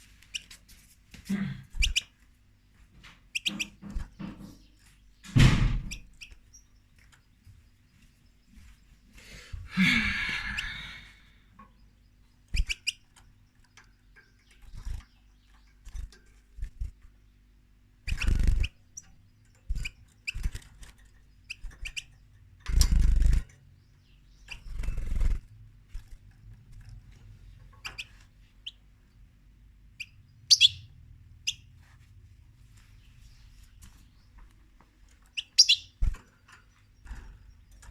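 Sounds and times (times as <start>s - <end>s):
high bird chirps: 10.2s - 15.8s, 30.0s - 31.7s, 35.2s - 37.9s.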